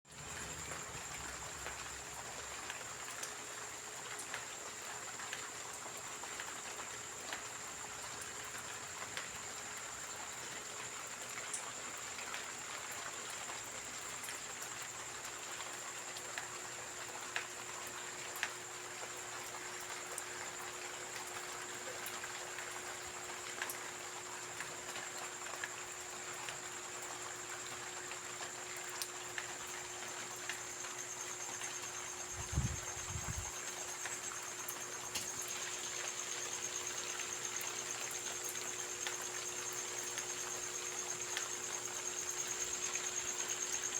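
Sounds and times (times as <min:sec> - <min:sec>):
steady rain hiss: 0:00.1 - 0:43.9
raindrops ticking: 0:26.4 - 0:43.9.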